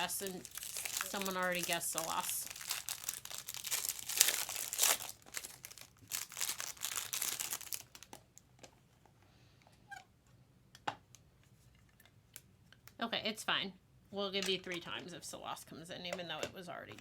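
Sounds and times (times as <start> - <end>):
crinkly wrapping rustling: 0.0 - 8.9.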